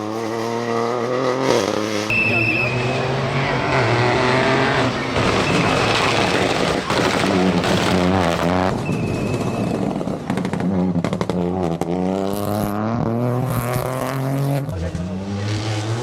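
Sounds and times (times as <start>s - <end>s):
rally car engine revving: 0.0s - 16.0s
sharp exhaust cracks: 1.9s - 12.7s.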